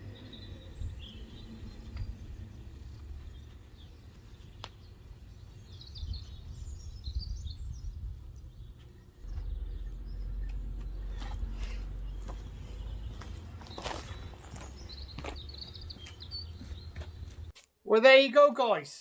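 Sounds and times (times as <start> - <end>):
low uneven rumble: 6.3 - 14.9.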